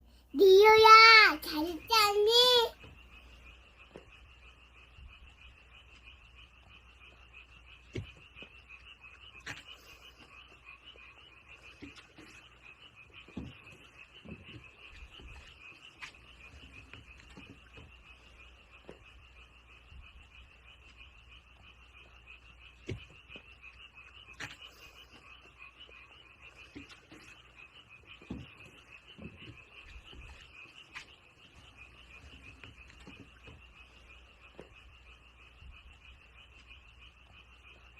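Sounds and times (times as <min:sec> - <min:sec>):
frogs trilling: 0:00.1 - 0:37.9.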